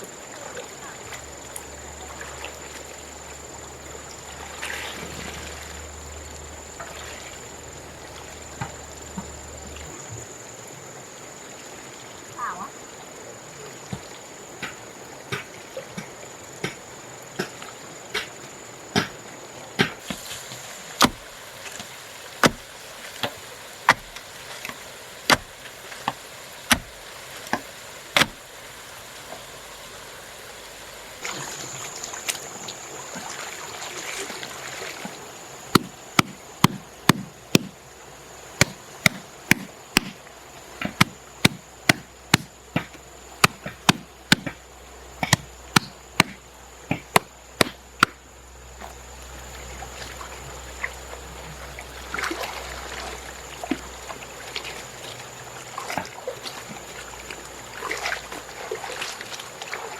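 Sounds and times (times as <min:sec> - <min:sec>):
chopping blows on wood: 0:13.9 - 0:16.8, 0:17.4 - 0:17.6, 0:19.0 - 0:19.2, 0:19.8 - 0:20.3, 0:21.0 - 0:21.4, 0:22.4 - 0:28.4, 0:35.7 - 0:37.8, 0:38.6 - 0:40.2, 0:40.8 - 0:44.6, 0:45.2 - 0:48.2
rough scraping hiss: 0:19.8 - 0:29.8.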